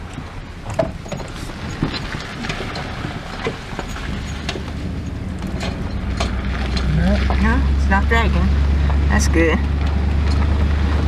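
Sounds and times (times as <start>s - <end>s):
knocks and rattles over rough ground: 0.0s - 11.0s
truck engine low note: 4.0s - 11.0s.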